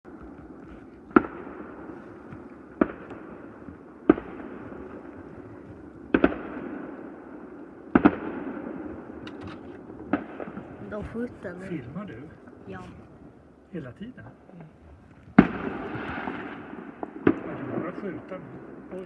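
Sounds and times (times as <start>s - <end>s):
fainter fireworks: 0.1s - 13.9s, 15.3s - 19.0s
sharp firework bangs: 6.0s - 9.2s, 15.4s - 18.9s.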